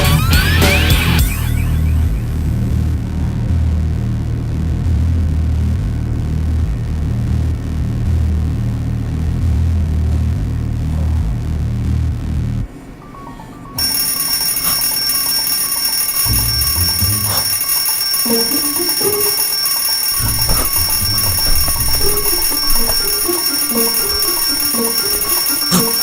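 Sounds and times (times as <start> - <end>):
music with bass notes: 0.0 - 10.6
alarm clock bell ringing: 13.8 - 26.0.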